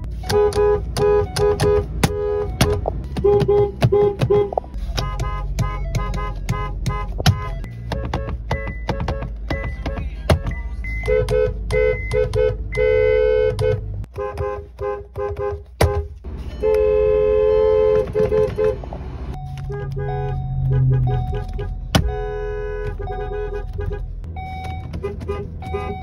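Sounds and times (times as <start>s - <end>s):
dual-tone car horns honking: 0.0s - 26.0s.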